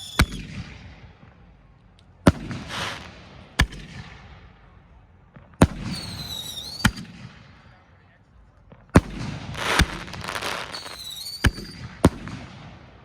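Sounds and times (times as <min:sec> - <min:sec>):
firework crackling hiss: 0:00.0 - 0:00.4, 0:02.4 - 0:03.3, 0:09.4 - 0:11.8
firework whistle: 0:00.0 - 0:00.6, 0:05.8 - 0:07.1, 0:09.6 - 0:11.8
firework bangs: 0:00.0 - 0:01.5, 0:02.2 - 0:04.7, 0:05.4 - 0:07.6, 0:08.7 - 0:13.0.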